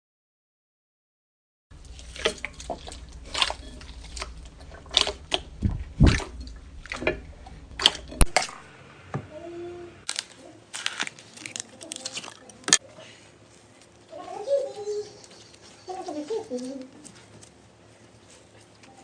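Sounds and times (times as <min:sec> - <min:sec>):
slime squelching: 0:01.7 - 0:08.7, 0:10.0 - 0:12.8
steady low hum: 0:01.7 - 0:10.7.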